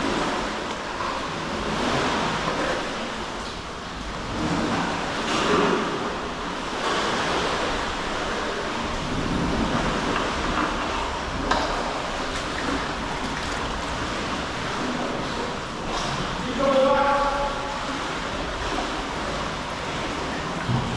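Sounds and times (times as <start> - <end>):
sea waves washing: 0.0 - 20.9.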